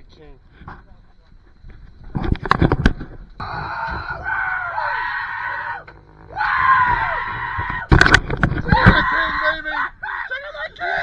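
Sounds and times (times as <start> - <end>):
men yelling excitedly: 3.4 - 8.0, 8.6 - 11.0.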